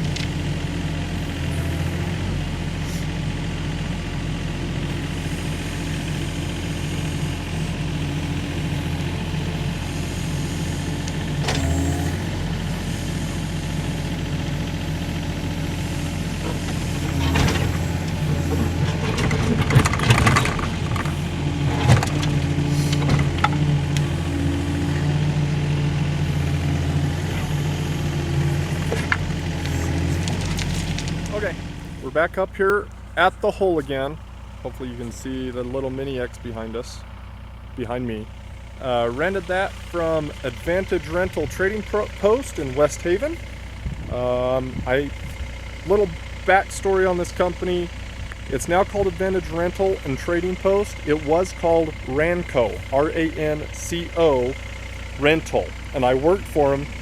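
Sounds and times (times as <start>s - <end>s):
diesel engine running: 0.0s - 57.0s
knocks and clatter: 16.4s - 24.0s.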